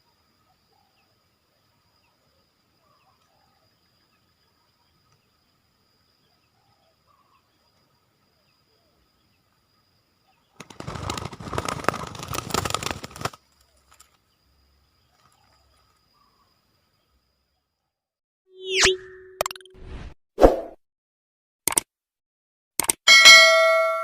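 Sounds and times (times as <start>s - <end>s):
dove wings flapping: 10.6s - 14.2s.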